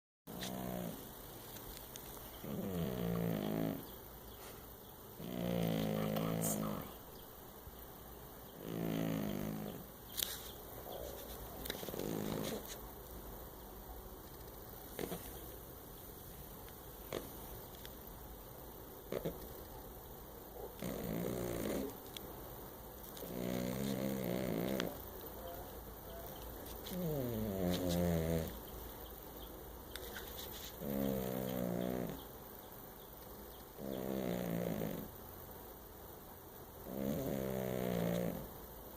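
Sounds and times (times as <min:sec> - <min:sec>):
cat snoring: 0:00.4 - 0:01.0, 0:02.4 - 0:03.8, 0:05.2 - 0:06.9, 0:08.6 - 0:09.8, 0:12.0 - 0:12.6, 0:20.8 - 0:22.0, 0:23.2 - 0:25.0, 0:26.9 - 0:28.6, 0:30.8 - 0:32.2, 0:33.8 - 0:35.1, 0:36.8 - 0:38.5.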